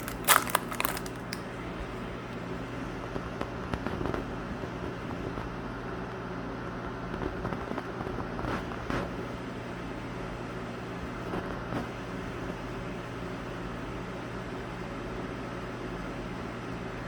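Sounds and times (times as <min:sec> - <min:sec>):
crackling clicks of card wrappers: 0:00.0 - 0:01.5.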